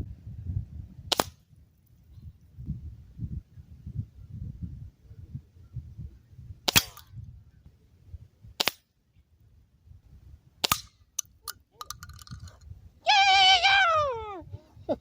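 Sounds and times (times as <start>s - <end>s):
air rifle shots: 6.7s - 7.1s.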